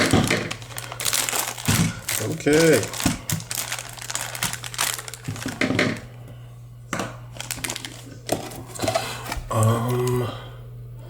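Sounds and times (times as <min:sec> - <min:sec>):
plastic wrapping crinkling: 0:00.0 - 0:06.2, 0:07.3 - 0:09.4
cardboard box being handled: 0:00.5 - 0:05.6.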